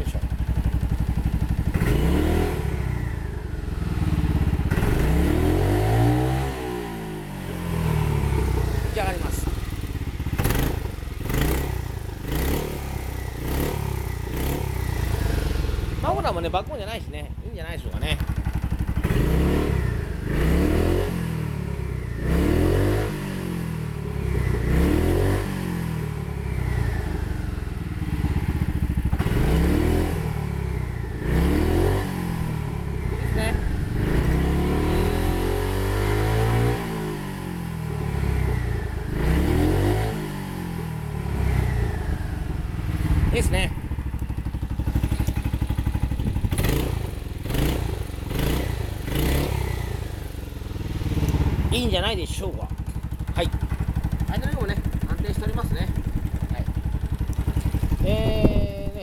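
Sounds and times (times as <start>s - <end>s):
scooter engine revving: 0.0s - 59.0s.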